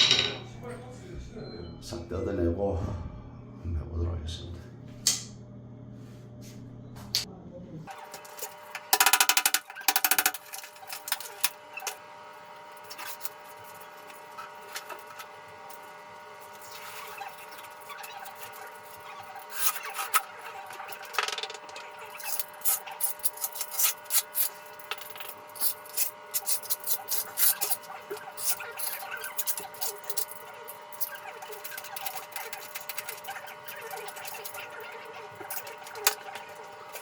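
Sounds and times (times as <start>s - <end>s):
scraping tile adhesive: 22.1s - 34.7s.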